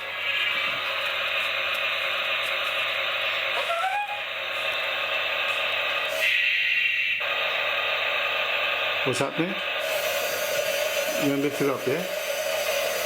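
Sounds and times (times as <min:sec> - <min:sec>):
toy crane machine sound effects: 0:09.0 - 0:13.0.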